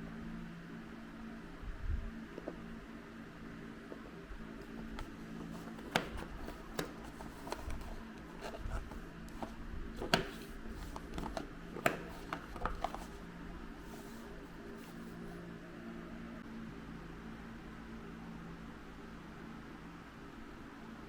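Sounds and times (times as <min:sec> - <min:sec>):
steady low hum: 0:00.0 - 0:21.0
soft rubbing: 0:13.8 - 0:15.4.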